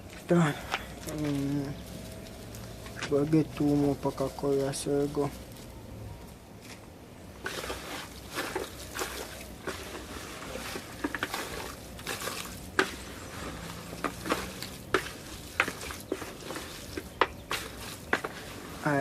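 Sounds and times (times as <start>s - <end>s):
wet squishing of meat by hand: 7.4s - 19.0s.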